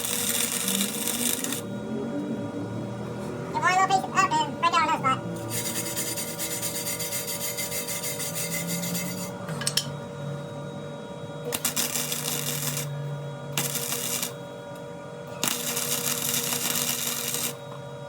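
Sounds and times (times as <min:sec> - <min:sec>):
rasping metalwork on steel rim: 0:05.4 - 0:09.4.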